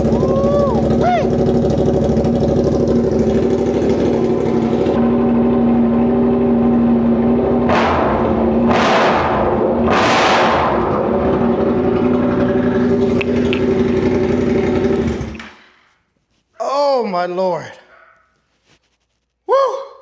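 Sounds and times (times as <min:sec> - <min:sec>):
loud motorcycle engine revving: 0:00.0 - 0:15.4.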